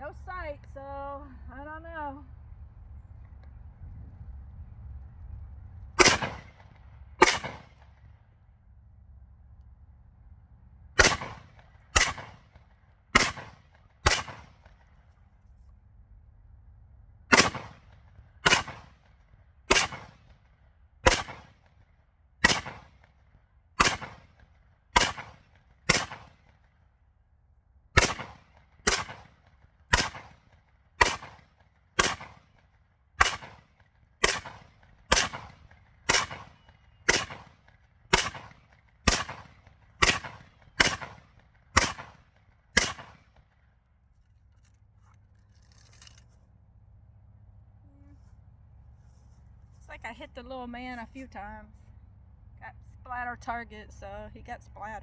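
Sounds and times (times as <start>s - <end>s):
rifle shots: 6.0s - 7.9s, 11.0s - 14.8s, 17.3s - 19.1s, 19.7s - 20.3s, 21.0s - 21.6s, 22.4s - 23.1s, 23.8s - 24.4s, 25.0s - 26.5s, 28.0s - 32.5s, 33.2s - 43.4s.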